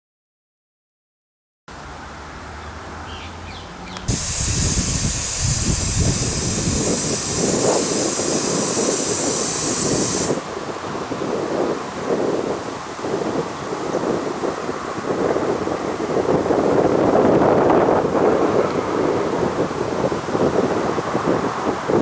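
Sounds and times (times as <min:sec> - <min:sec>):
loud hiss: 0:04.1 - 0:11.0
steady rushing noise: 0:04.1 - 0:12.1.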